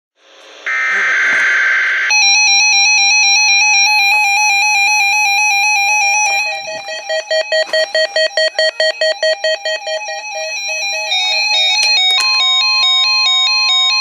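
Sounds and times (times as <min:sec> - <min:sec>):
lower pulsing beep: 0:00.7 - 0:14.0
warbling electronic alert beep: 0:05.4 - 0:14.0.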